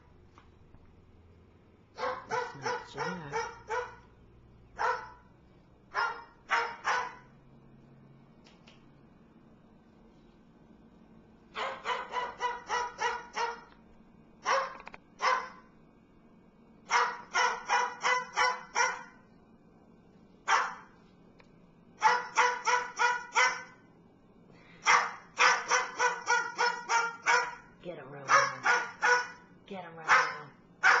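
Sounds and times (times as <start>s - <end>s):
bird mimicking dog barks: 30.1s - 31.0s.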